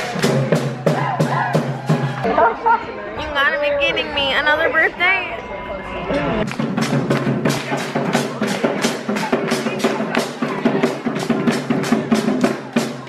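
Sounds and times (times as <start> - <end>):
music with fast drumbeat: 0.0 - 2.2, 6.5 - 13.0.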